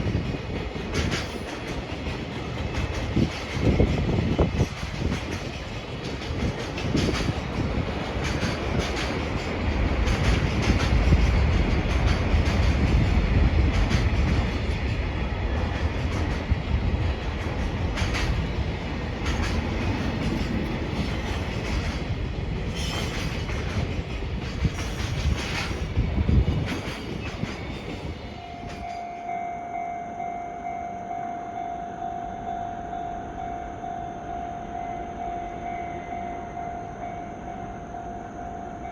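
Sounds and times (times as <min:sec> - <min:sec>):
freight train wheels clattering: 0:00.0 - 0:29.3
steady high tone: 0:28.3 - 0:38.9.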